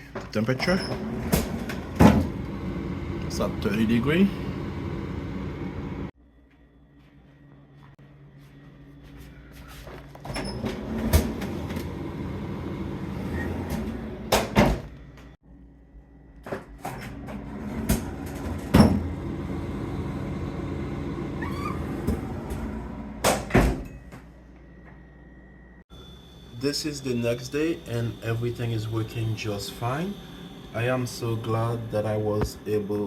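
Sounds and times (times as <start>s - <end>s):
refrigerator humming: 0.0s - 33.0s
refrigerator doors thumping shut: 23.2s - 23.9s.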